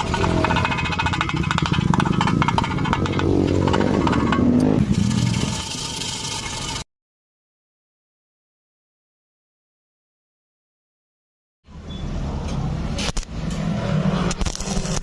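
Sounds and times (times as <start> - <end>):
welding arc crackling: 13.0 - 13.4, 14.2 - 15.0.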